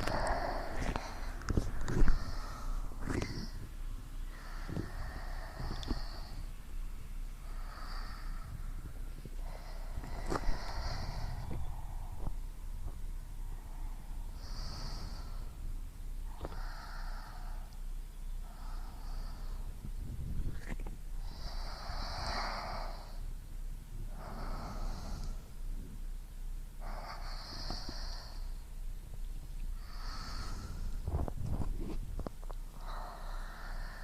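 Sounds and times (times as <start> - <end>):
low steady rumble: 0.0 - 34.0
slow hissy breathing: 0.0 - 34.0.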